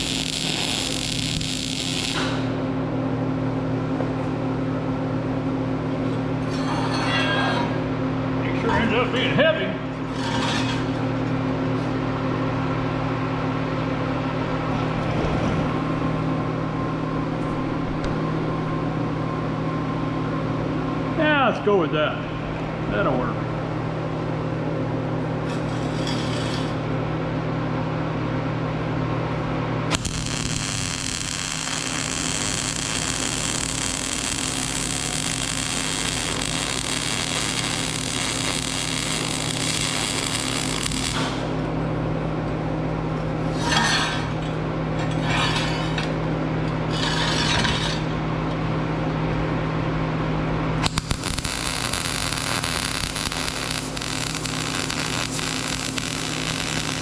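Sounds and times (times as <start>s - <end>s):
welder hissing: 0.0s - 2.6s, 29.9s - 41.6s, 50.8s - 57.0s
steady electrical hum: 0.0s - 57.0s.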